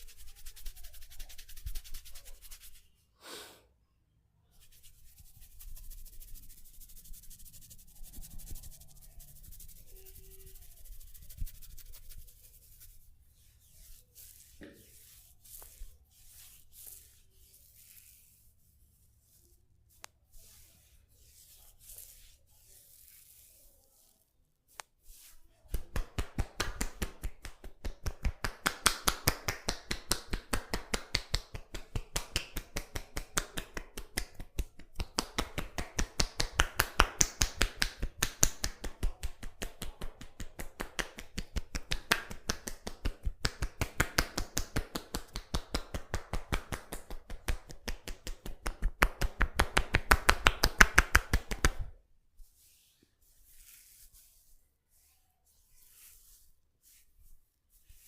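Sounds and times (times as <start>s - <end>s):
hands slapping and tapping on body: 25.6s - 52.0s.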